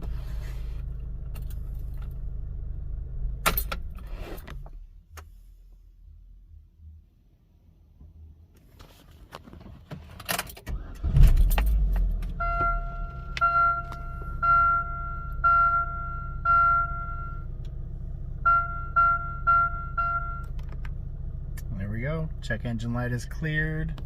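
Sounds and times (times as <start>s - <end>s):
car engine starting and idling: 0.0s - 24.0s
dashboard warning chime: 12.3s - 17.5s, 18.4s - 20.6s.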